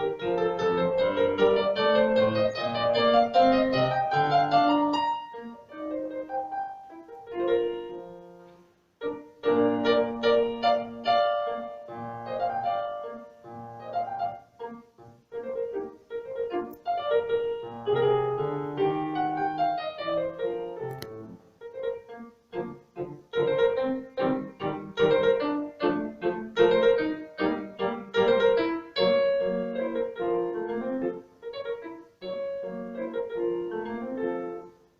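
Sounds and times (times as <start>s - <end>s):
slow classical piano piece: 0.0s - 34.9s.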